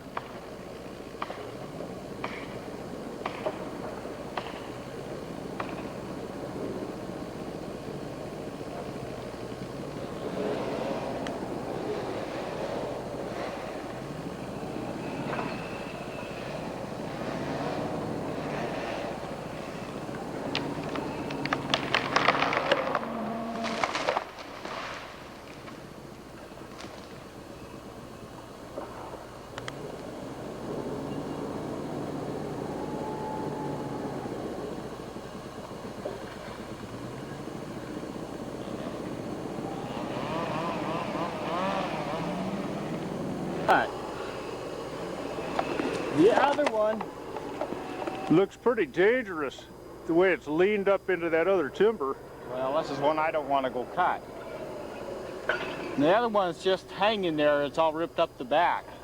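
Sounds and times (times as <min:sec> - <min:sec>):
chainsaw cutting a tree: 0:00.0 - 0:27.2, 0:33.8 - 0:48.4.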